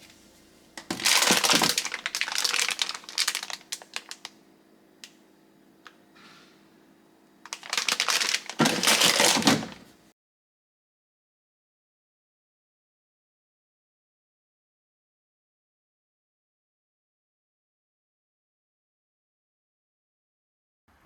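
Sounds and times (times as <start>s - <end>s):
crinkling and clattering: 0.8s - 4.3s, 7.5s - 10.0s.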